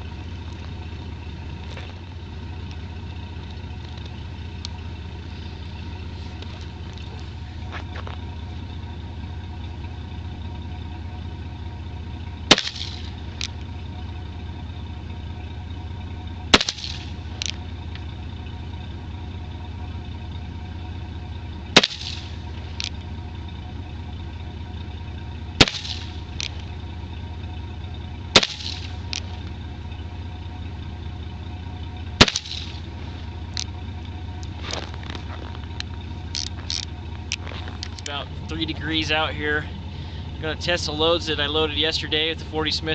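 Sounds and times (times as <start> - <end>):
steady low hum: 0.0 - 42.9
revolver gunshots: 12.5 - 13.2, 16.5 - 17.2, 21.7 - 22.4, 25.6 - 26.3, 28.3 - 29.0, 32.2 - 32.9.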